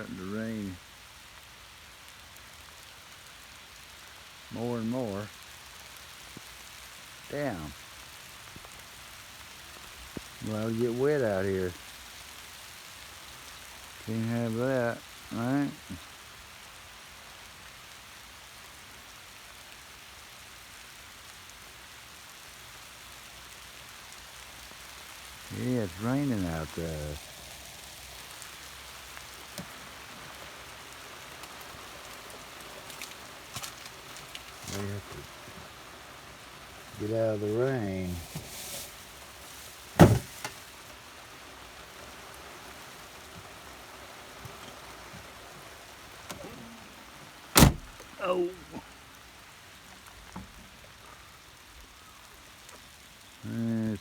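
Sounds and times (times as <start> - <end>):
steady rain patter: 0.0 - 54.0
loud thump: 40.0 - 40.5, 47.6 - 48.0.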